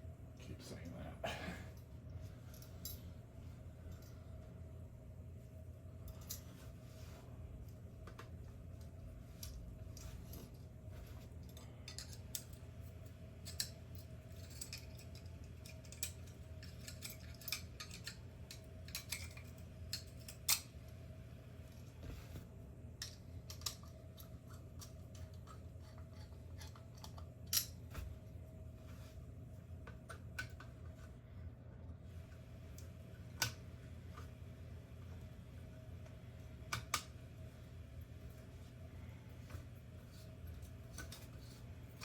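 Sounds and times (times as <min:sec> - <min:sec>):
steady low hum: 0:00.0 - 0:42.0
clicks and clatter of parts: 0:11.3 - 0:20.9, 0:23.0 - 0:28.1, 0:29.8 - 0:31.2, 0:39.5 - 0:42.0.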